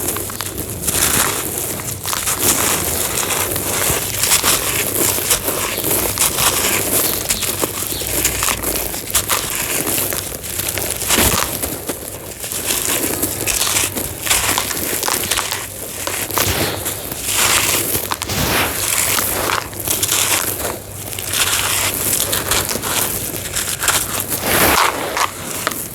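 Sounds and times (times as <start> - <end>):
cement crunching and crackling: 0.0 - 25.9.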